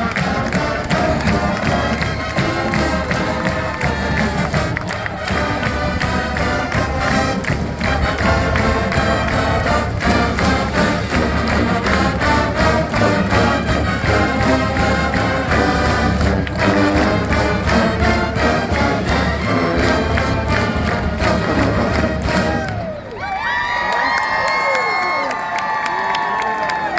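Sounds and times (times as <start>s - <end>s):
marching band playing: 0.0s - 23.2s.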